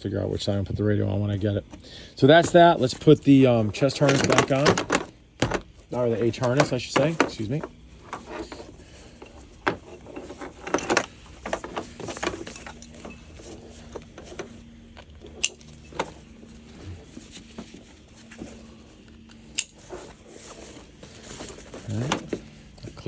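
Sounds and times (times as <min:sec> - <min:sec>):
faint steady hum: 0:00.0 - 0:23.0
webbing rustling: 0:01.1 - 0:23.0
buckles clicking: 0:03.7 - 0:16.3, 0:19.0 - 0:19.8.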